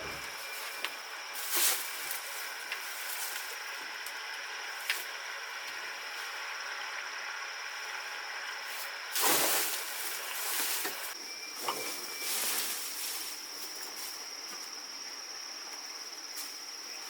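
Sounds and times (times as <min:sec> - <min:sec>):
burst of hissing: 0:09.1 - 0:11.1.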